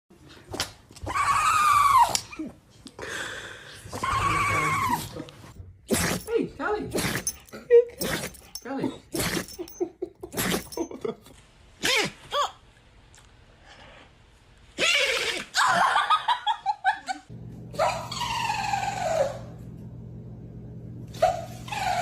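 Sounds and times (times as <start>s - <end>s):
dogs sneezing: 5.9s - 6.3s, 6.9s - 10.8s, 11.8s - 12.3s.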